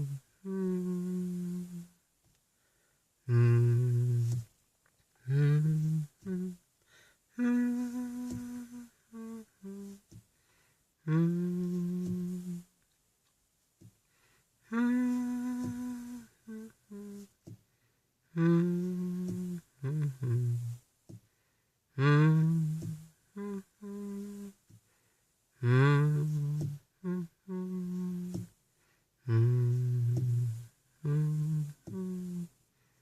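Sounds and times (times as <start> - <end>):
person humming a slow tune: 0.0 - 2.1, 3.2 - 4.6, 5.2 - 10.4, 11.0 - 12.8, 14.6 - 17.6, 18.2 - 21.2, 21.9 - 24.7, 25.5 - 28.6, 29.2 - 32.7.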